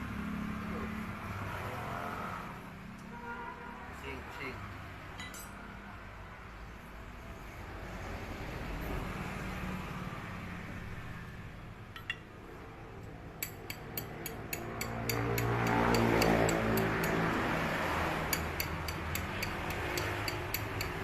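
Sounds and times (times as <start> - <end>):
metal tools clinking: 5.2 - 5.6.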